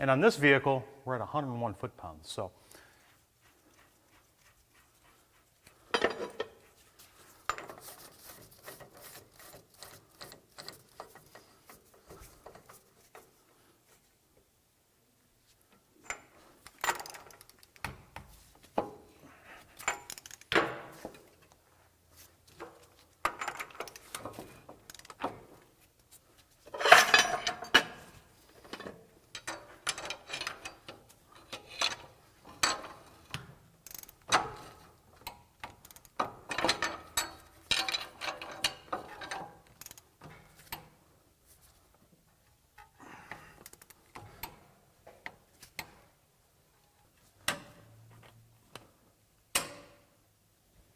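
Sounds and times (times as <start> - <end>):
ratchet wrench clicking: 20.0 - 20.5, 24.9 - 25.1, 33.8 - 34.2, 35.7 - 36.2, 39.8 - 40.0
metal tool clatter: 26.7 - 28.1.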